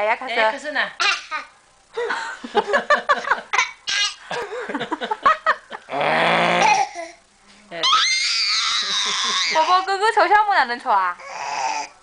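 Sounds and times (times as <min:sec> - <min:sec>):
laughter and giggling: 0:02.0 - 0:03.6, 0:04.4 - 0:05.9, 0:08.8 - 0:09.7.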